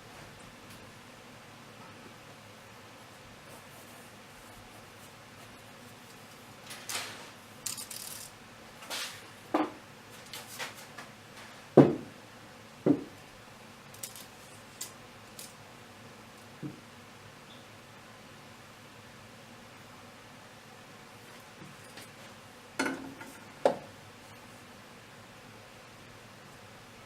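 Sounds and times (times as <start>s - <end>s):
knocks and thumps: 11.8s - 12.1s, 12.8s - 13.2s.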